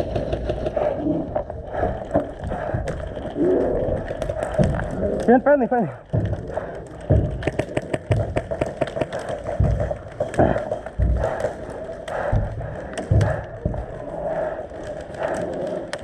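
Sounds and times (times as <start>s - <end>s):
low thuds of footsteps: 5.9s - 14.6s.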